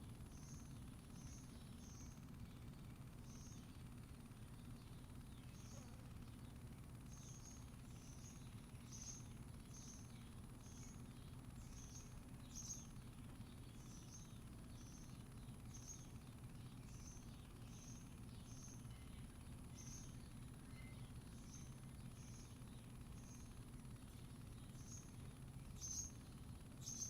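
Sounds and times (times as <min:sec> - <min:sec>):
small bird chirping: 0:00.2 - 0:27.0
faint high whine: 0:13.7 - 0:27.0.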